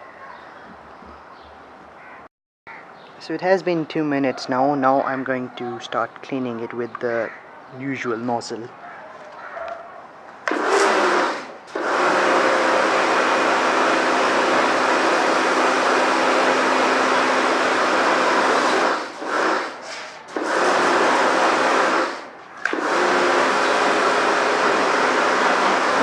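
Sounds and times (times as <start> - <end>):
pressure washer motor humming: 10.4 - 26.0.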